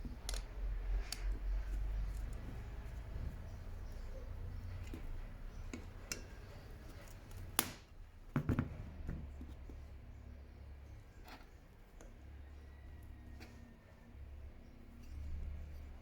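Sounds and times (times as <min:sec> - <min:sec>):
handling clicks and knocks: 0:00.0 - 0:09.8.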